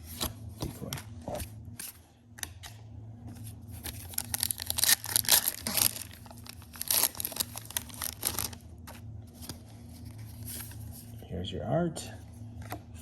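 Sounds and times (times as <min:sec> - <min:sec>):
foil wrapper tearing and crinkling: 0:03.8 - 0:08.6.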